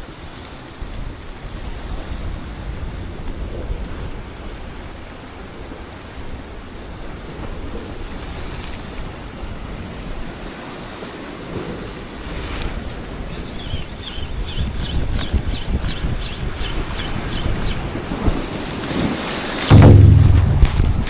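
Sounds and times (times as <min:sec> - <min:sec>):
surf washing against rocks: 0:00.0 - 0:21.0
wind buffeting microphone: 0:00.8 - 0:10.4, 0:11.5 - 0:21.0.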